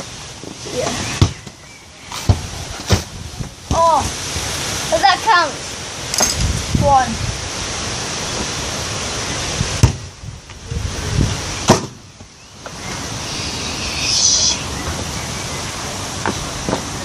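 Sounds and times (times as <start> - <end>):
wind buffeting microphone: 2.2 - 4.8, 6.0 - 17.0.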